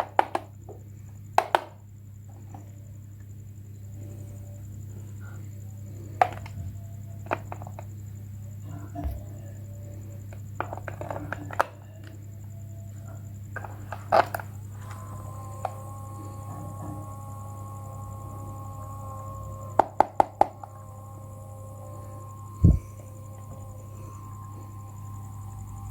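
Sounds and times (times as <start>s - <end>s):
low electrical hum: 0.0s - 25.9s
small objects tapping and knocking: 6.2s - 6.6s, 7.2s - 7.9s, 10.3s - 12.2s.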